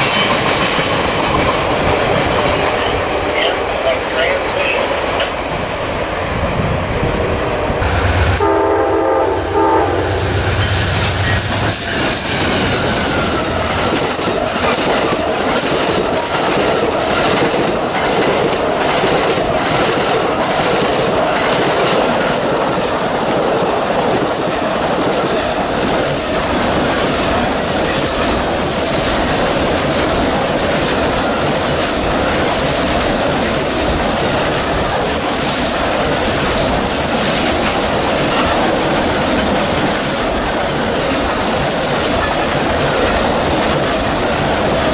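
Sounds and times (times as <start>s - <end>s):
train wheels rumbling: 0.0s - 44.9s
train horn: 7.8s - 12.2s.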